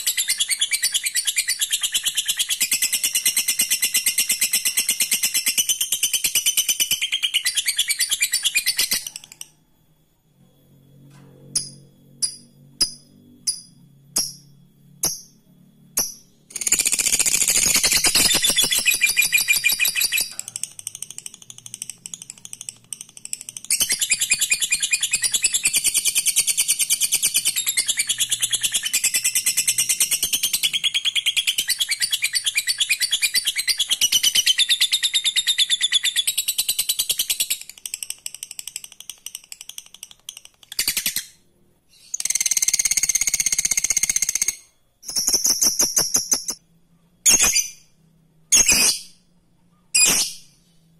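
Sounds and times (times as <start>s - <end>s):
bird chirps: 0.0s - 10.0s, 11.6s - 50.8s
bird chattering trill: 16.5s - 30.0s.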